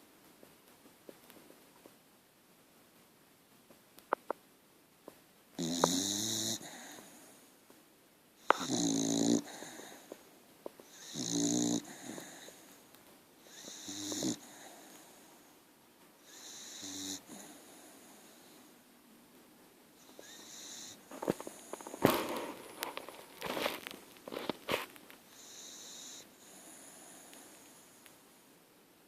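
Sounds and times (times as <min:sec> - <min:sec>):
dog snoring: 0:05.6 - 0:07.2, 0:08.4 - 0:10.2, 0:10.8 - 0:12.7, 0:13.4 - 0:15.2, 0:16.2 - 0:18.6, 0:20.0 - 0:22.6, 0:25.3 - 0:27.8.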